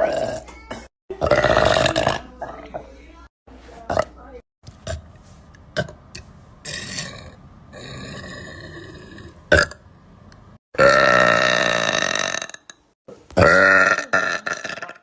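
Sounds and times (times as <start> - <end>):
woman burping loudly: 0.0 - 2.9, 10.8 - 12.8, 13.4 - 15.0.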